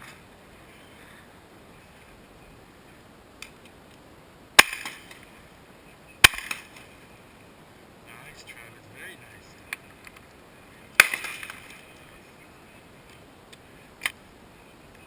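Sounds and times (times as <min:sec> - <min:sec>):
shotgun shots with echo: 0:11.0 - 0:11.7.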